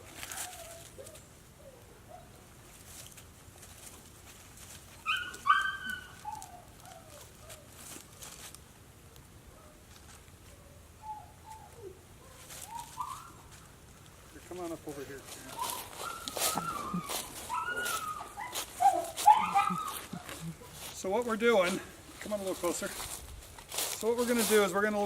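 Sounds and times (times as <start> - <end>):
dog yelping: 5.0 - 7.7, 10.6 - 13.5, 15.5 - 20.8
dog whimpering: 15.5 - 20.8.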